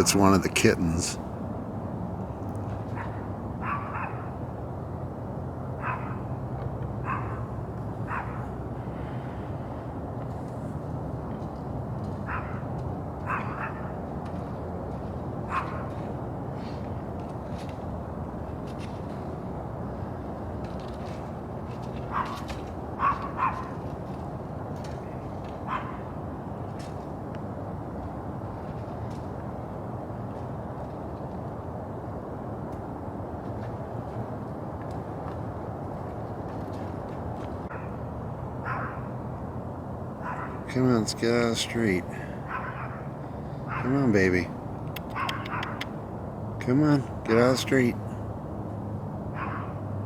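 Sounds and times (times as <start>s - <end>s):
steady background hum: 0.0s - 50.0s
dog barking: 3.0s - 4.4s, 5.8s - 6.3s, 7.0s - 7.5s, 8.1s - 8.5s, 12.2s - 12.6s, 13.2s - 13.9s, 15.5s - 15.9s, 22.1s - 22.4s, 23.0s - 23.8s, 25.7s - 26.0s, 38.6s - 39.1s, 40.2s - 40.7s, 42.4s - 43.1s, 43.7s - 44.0s, 45.0s - 45.9s, 49.4s - 49.8s.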